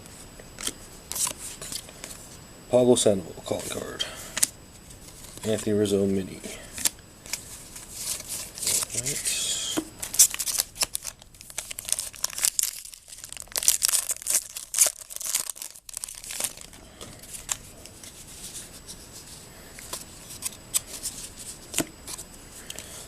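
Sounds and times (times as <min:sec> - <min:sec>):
wrapper tearing and crinkling: 0:06.8 - 0:09.2, 0:10.0 - 0:17.6.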